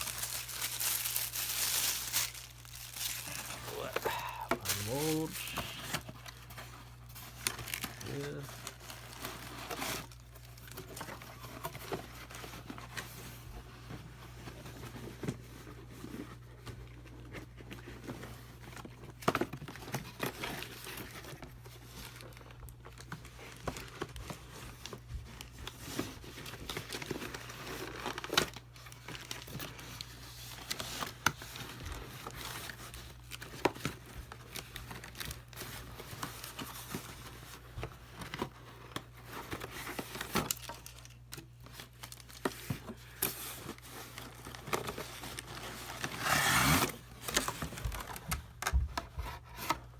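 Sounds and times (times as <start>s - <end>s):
plastic packaging crinkling: 0.0s - 13.2s, 25.7s - 48.7s.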